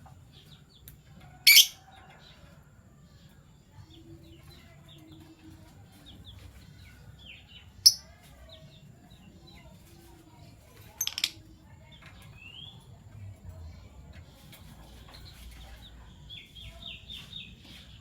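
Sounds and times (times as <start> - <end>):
lovebirds chirping: 0.0 - 1.8, 6.1 - 10.1.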